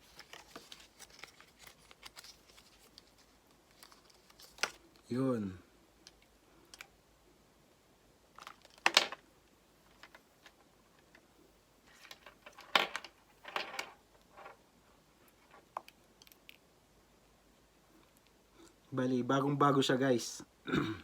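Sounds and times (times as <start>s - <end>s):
packaging rustles and taps: 0.0s - 5.0s.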